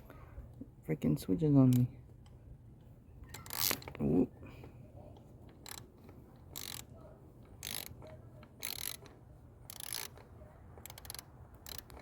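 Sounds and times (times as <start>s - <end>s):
ratchet clicking: 3.3s - 4.0s, 5.2s - 12.0s.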